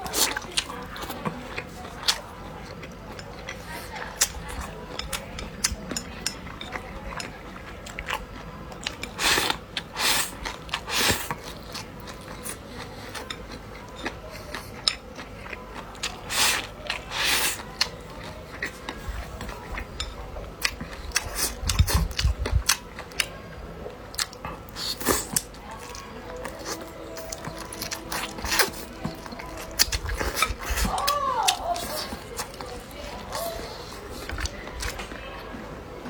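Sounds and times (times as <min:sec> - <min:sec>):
crunching and slurping: 0:00.0 - 0:35.9
person chewing and biting: 0:24.1 - 0:35.0.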